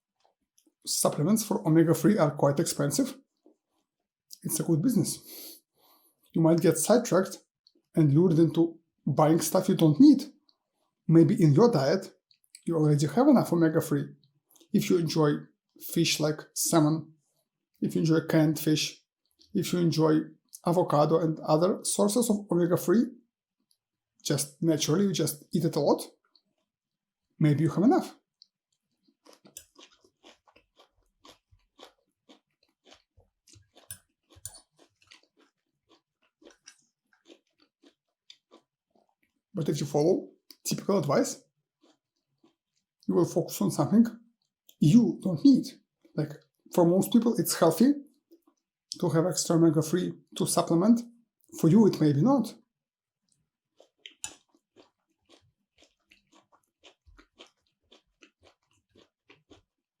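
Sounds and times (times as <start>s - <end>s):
wet chewing: 28.0s - 39.5s, 41.8s - 43.0s, 53.2s - 59.8s.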